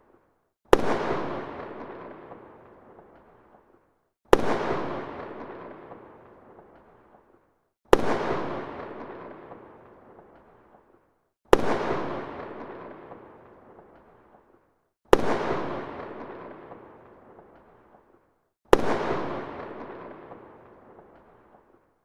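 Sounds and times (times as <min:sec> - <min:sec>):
firecracker bang with long echo: 0:00.7 - 0:03.2, 0:04.3 - 0:06.8, 0:07.9 - 0:10.4, 0:11.5 - 0:14.0, 0:15.1 - 0:17.8, 0:18.7 - 0:21.4.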